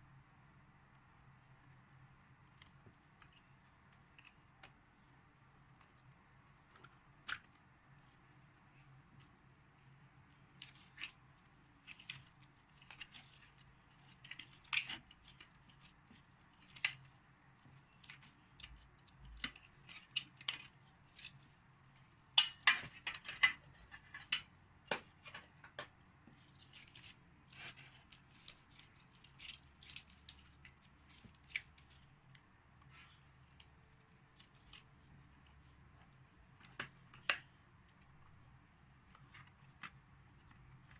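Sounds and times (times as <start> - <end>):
slime squishing: 5.8 - 24.0, 26.2 - 37.6.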